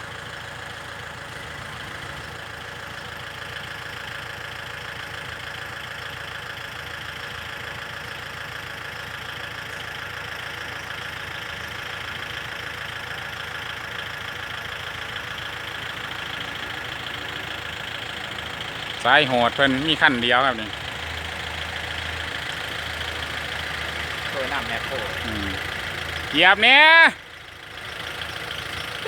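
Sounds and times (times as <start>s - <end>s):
diesel engine clattering: 0.0s - 29.0s.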